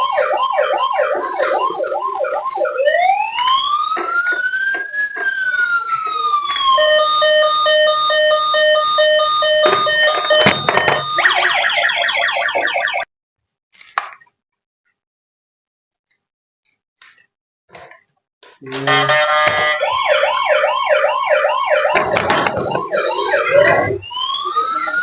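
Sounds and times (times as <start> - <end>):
toy electronic siren: 0.0 - 13.1, 18.6 - 25.0.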